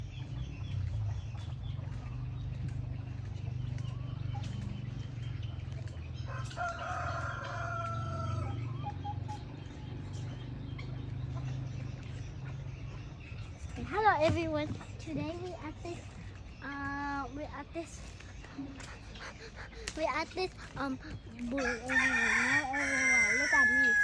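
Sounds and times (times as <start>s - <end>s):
steady low rumble: 0.0s - 6.6s
rooster crowing: 6.3s - 8.7s, 21.6s - 24.0s.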